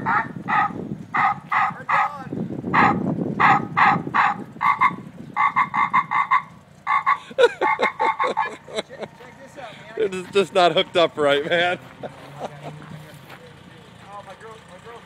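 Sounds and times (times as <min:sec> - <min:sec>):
horn speaker honking blasts: 0:00.0 - 0:07.2.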